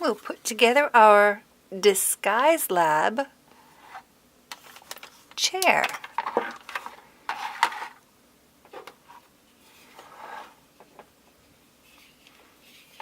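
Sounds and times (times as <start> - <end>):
soft rustle: 8.7 - 13.0.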